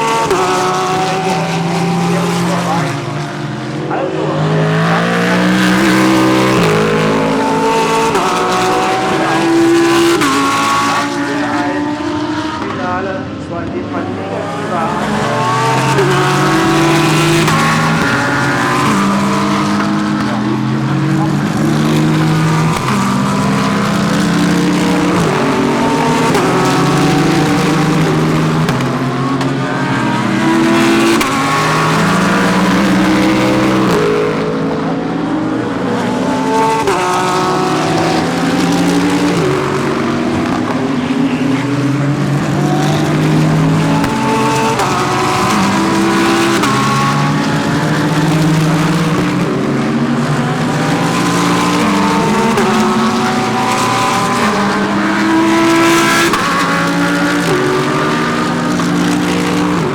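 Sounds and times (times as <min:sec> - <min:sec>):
race car engines accelerating: 0:00.0 - 0:59.9.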